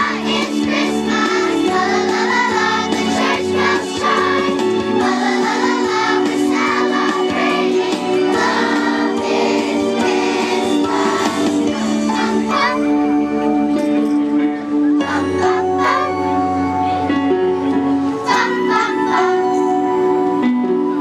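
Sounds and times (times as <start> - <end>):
children's choir singing: 0.0 - 13.0, 15.0 - 16.4, 18.2 - 19.6
instrumental backing track: 0.0 - 21.0.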